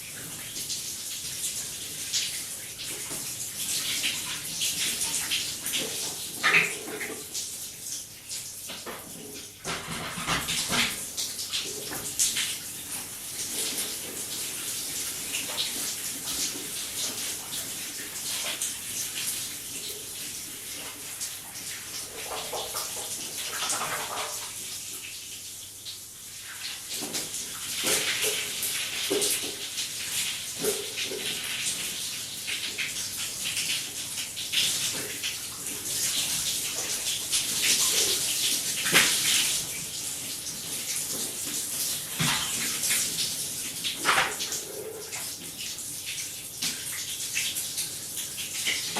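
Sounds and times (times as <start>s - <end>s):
water splashing on body: 26.6s - 45.5s.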